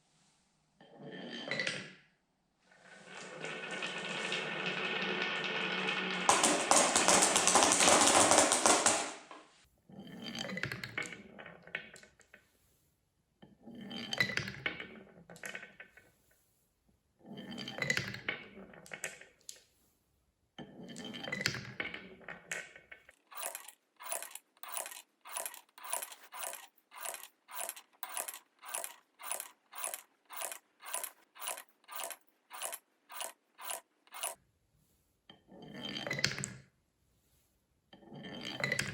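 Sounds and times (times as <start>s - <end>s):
marbles rattling down wooden track: 2.8s - 9.4s, 23.1s - 34.4s.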